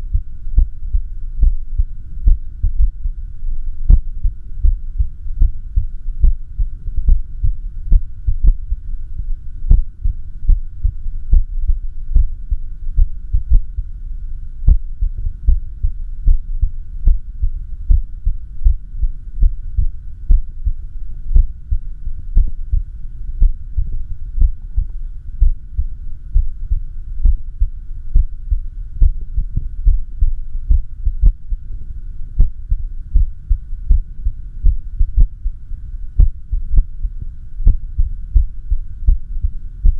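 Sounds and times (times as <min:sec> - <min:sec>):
irregular heartbeat thuds: 0:00.0 - 0:03.2, 0:03.8 - 0:08.8, 0:09.7 - 0:13.9, 0:14.6 - 0:31.7, 0:32.3 - 0:39.9
steady hum: 0:00.0 - 0:39.9.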